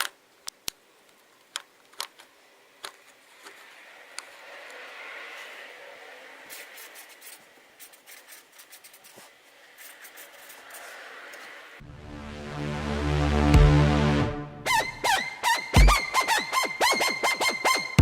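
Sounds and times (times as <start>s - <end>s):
paper rustling and scratching: 2.9s - 4.6s, 6.4s - 11.7s.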